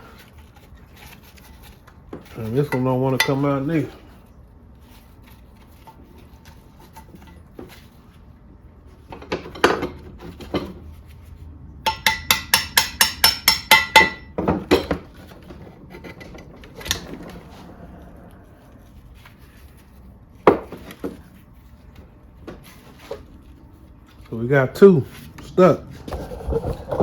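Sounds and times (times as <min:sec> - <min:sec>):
metal-on-metal knocking: 0:11.8 - 0:15.0.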